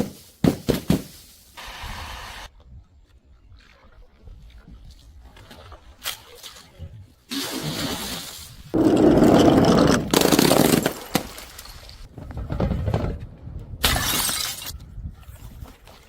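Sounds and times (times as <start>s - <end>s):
glass bottles shattering: 13.8s - 14.8s.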